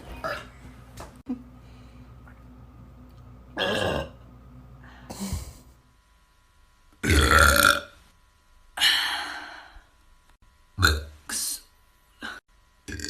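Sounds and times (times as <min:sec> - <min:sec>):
person burping: 0:03.5 - 0:04.2, 0:07.0 - 0:08.0.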